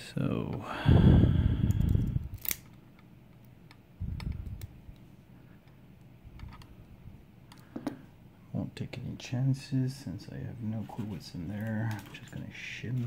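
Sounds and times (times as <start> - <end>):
lock parts clicking: 1.8 - 4.8.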